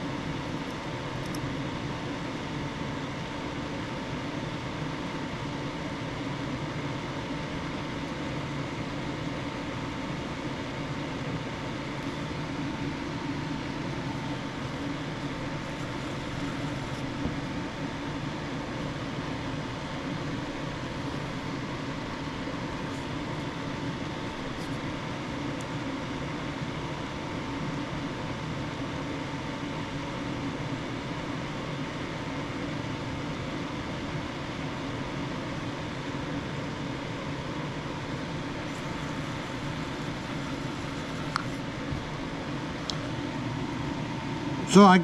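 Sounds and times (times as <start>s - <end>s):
mechanical hum and hiss: 0.0s - 45.0s.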